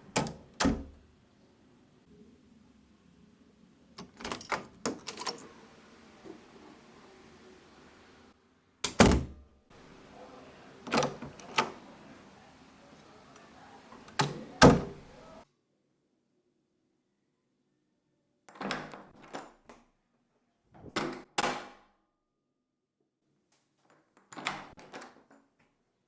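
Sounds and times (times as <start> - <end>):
door handle and latch clicks: 0.0 - 1.0, 4.0 - 5.6, 8.9 - 15.4.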